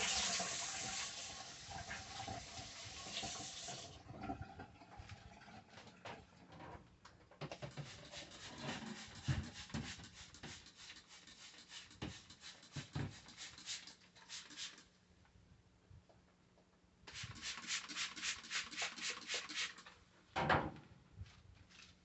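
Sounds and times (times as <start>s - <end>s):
cloth rag scrubbing: 7.7s - 14.9s, 17.1s - 19.8s.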